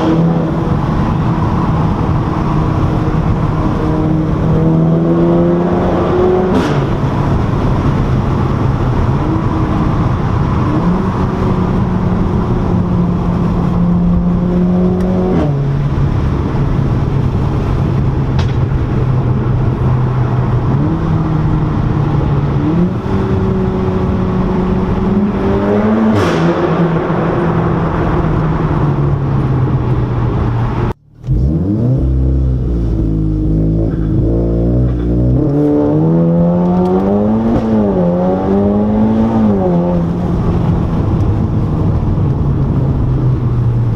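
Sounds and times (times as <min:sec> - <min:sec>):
car engine and exhaust revving: 0:00.0 - 0:43.9
second car revving: 0:00.0 - 0:43.9.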